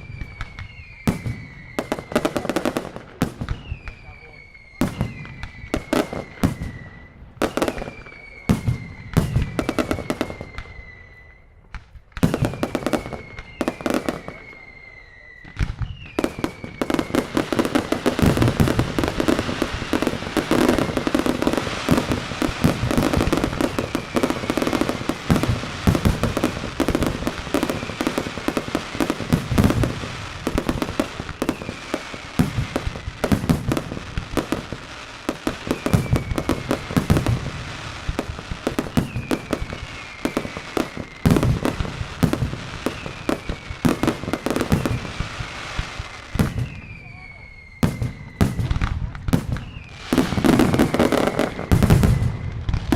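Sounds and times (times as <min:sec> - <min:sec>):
falling whistles: 0:00.0 - 0:52.9
firecracker bangs: 0:15.4 - 0:52.9.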